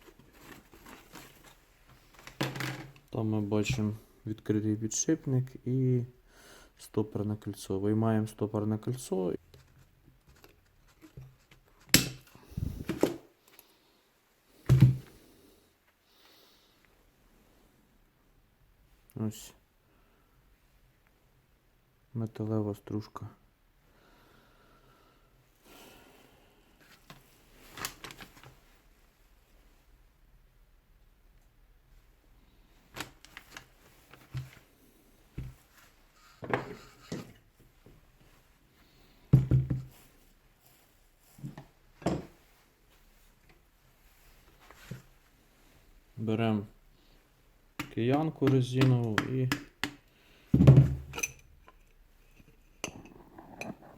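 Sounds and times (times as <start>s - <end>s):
tools and metal parts clattering: 50.8s - 51.8s.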